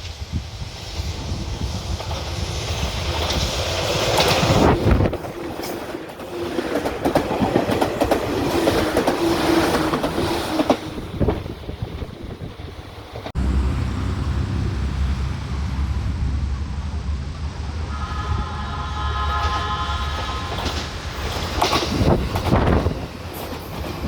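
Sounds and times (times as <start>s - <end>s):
train passing: 0.0s - 24.0s
wheels clacking over rail joints: 1.9s - 17.9s, 19.4s - 24.0s
steady tone: 13.4s - 20.7s.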